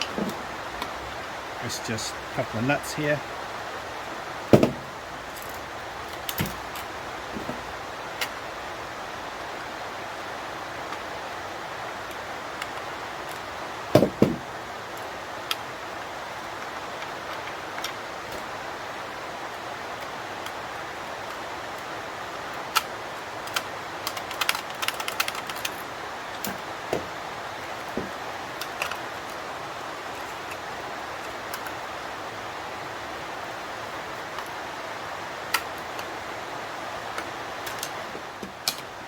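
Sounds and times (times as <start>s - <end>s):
steady rain hiss: 0.0s - 39.0s
knocks: 4.5s - 4.9s, 14.0s - 14.4s.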